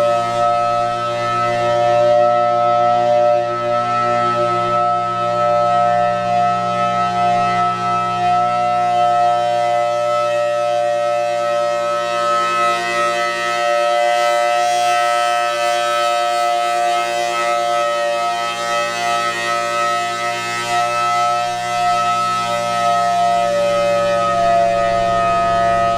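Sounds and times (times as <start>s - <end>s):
dual-tone warning siren: 0.0s - 25.9s.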